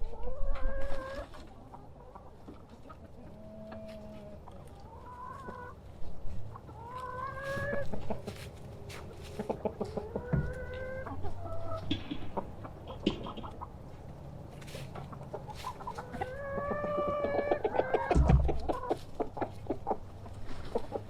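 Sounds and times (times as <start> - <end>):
chickens clucking: 0.0 - 21.0
drawn-out rising chicken calls: 0.0 - 21.0
sharp clicks and knocks: 11.8 - 13.7.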